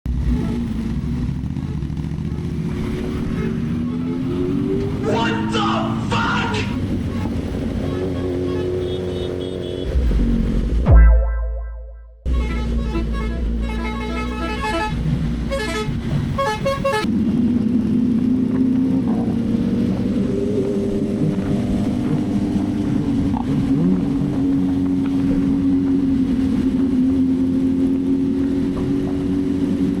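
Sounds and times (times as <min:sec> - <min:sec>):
motorcycle engine running: 0:00.1 - 0:04.2.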